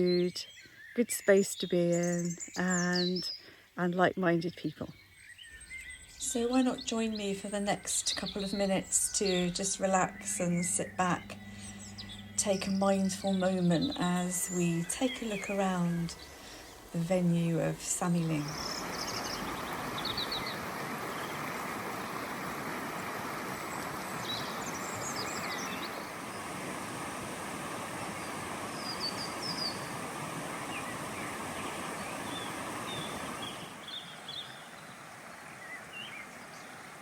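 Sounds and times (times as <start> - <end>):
small birds chirping: 0.0 - 26.8, 27.6 - 37.0
river water rushing: 14.5 - 37.0.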